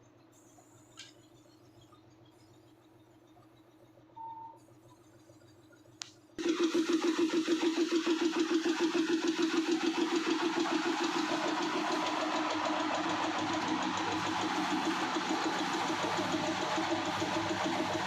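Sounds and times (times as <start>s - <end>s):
machine motor humming and throbbing: 6.4s - 18.0s.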